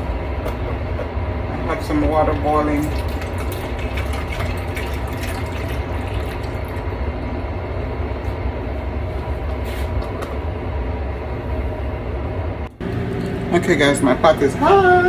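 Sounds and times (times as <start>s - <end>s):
kitchen appliance whirring: 12.7s - 15.0s.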